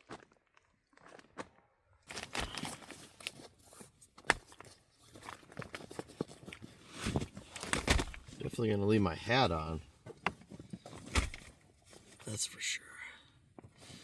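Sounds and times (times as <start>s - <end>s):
fabric rustling and crinkling: 2.1s - 8.5s.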